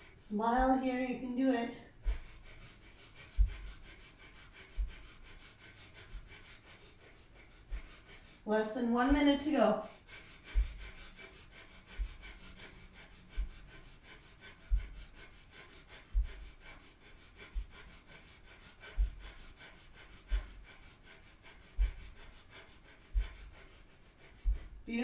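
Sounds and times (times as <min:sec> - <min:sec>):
rapid forceful nose breathing: 0:00.0 - 0:01.0, 0:01.8 - 0:24.9
soft low thump: 0:03.4 - 0:03.7, 0:09.0 - 0:09.4.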